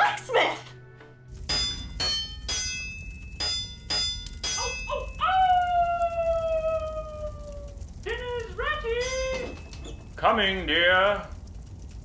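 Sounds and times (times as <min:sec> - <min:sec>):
hammer blows on anvil: 0:01.5 - 0:05.0
wolf howl: 0:04.6 - 0:07.9.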